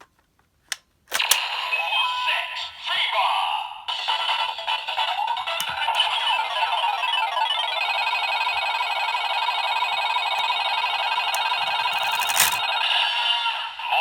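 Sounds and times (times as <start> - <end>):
toy electronic ringing jingle: 4.0 - 13.9
toy click: 11.2 - 12.6.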